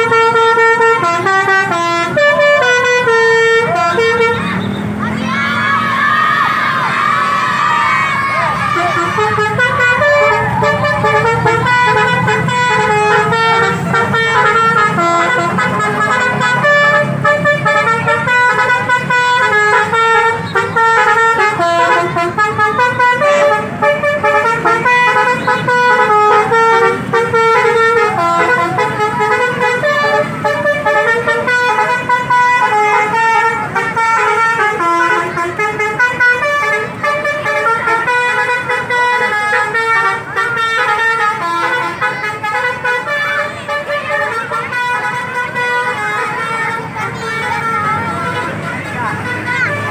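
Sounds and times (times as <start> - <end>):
musical bus horn tune: 0.0 - 49.9.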